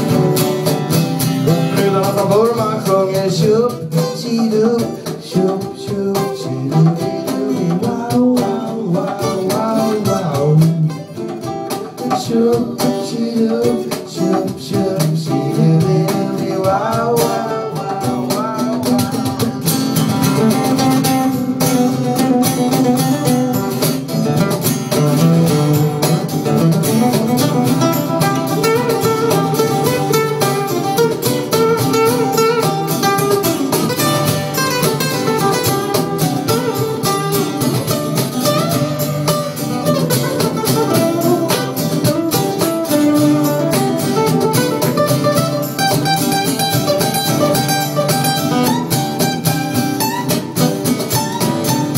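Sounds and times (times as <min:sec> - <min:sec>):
guitar playing plucked notes: 0:00.0 - 0:51.9.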